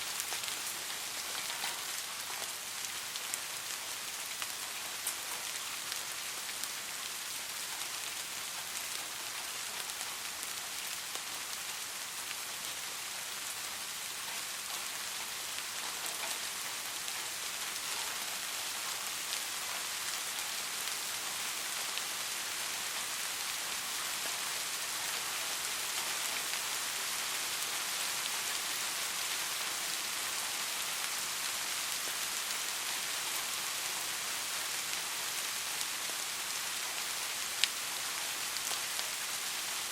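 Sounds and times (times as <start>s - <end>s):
soft rain falling: 0.0s - 39.9s
faint raindrop ticks: 0.1s - 13.0s, 13.6s - 39.9s.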